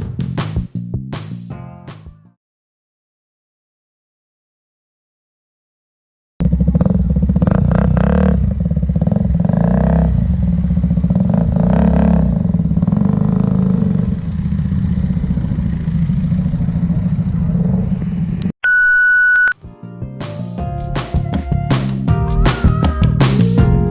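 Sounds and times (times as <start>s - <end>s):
motorcycle engine idling and revving: 6.4s - 18.5s.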